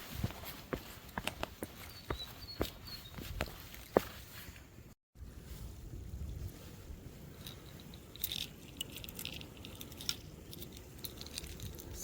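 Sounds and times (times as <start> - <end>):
wind buffeting microphone: 5.2 - 7.4.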